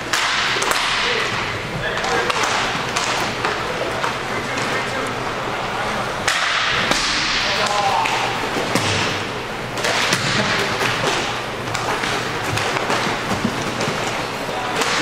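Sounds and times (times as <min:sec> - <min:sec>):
hockey sticks clacking: 0:00.0 - 0:05.2, 0:06.2 - 0:15.0
players' voices: 0:00.2 - 0:15.0.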